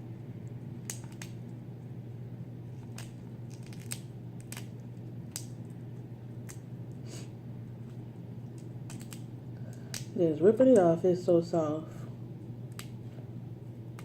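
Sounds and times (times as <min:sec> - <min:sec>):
steady low hum: 0:00.0 - 0:14.0
shellfish shell cracking: 0:00.8 - 0:01.4, 0:02.8 - 0:05.8, 0:06.4 - 0:06.7, 0:08.5 - 0:10.2, 0:12.7 - 0:13.0.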